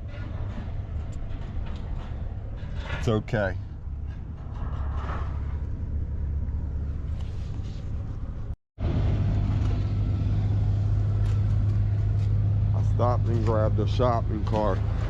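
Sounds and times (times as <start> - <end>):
truck engine running: 5.2 - 15.0.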